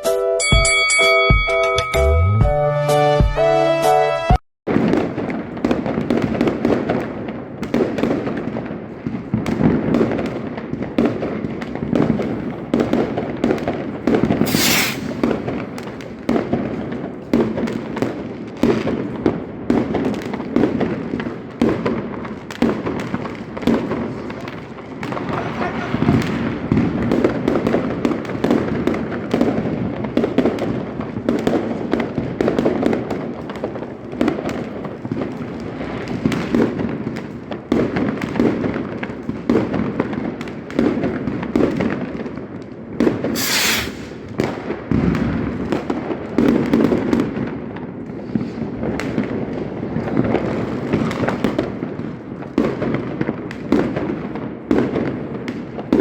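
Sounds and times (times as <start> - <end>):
fireworks bangs and crackling: 4.7 - 56.0
sharp high hiss: 14.5 - 15.2, 43.4 - 44.2.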